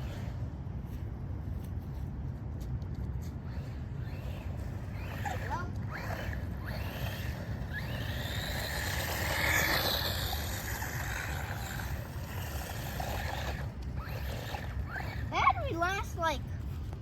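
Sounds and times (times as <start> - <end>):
rc car motor whining: 0.0 - 0.4, 3.3 - 16.4.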